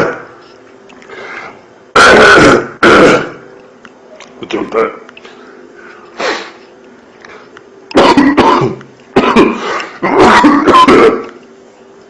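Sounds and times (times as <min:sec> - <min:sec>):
man coughing: 0:08.0 - 0:11.3.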